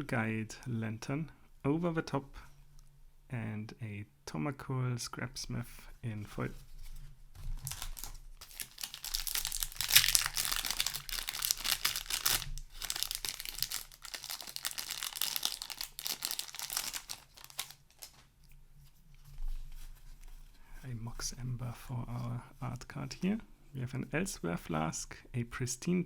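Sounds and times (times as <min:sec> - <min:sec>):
foil wrapper tearing and crinkling: 0:07.6 - 0:18.2.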